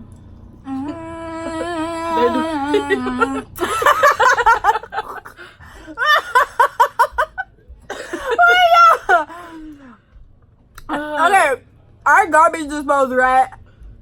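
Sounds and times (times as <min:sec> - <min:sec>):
high wavering held voice: 0:00.7 - 0:03.5
bursts of laughter: 0:01.4 - 0:09.4.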